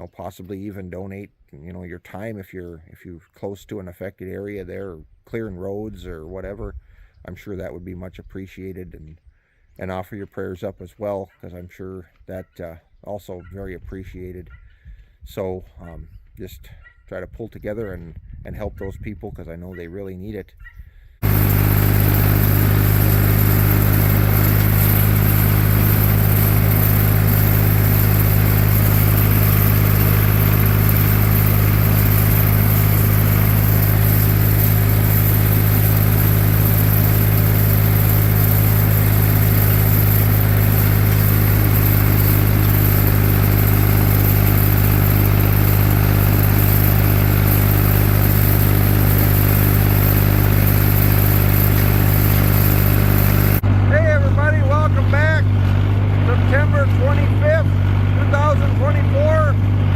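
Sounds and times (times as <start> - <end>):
tractor engine droning: 21.2 - 59.9.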